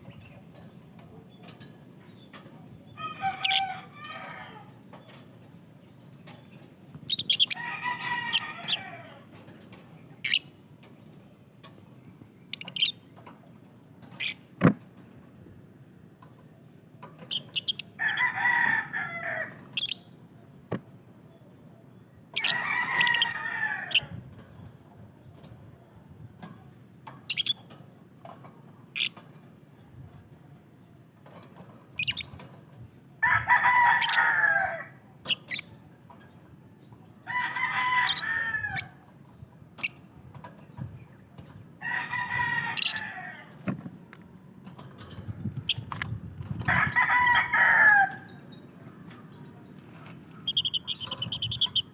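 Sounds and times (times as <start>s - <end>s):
high sharp bird chirps: 48.8s - 51.9s.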